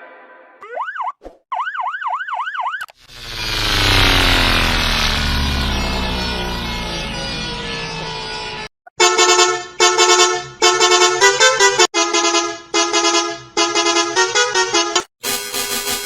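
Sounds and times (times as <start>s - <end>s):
steady horn tone: 3.0s - 16.0s
musical bus horn playing a tune: 6.5s - 16.0s.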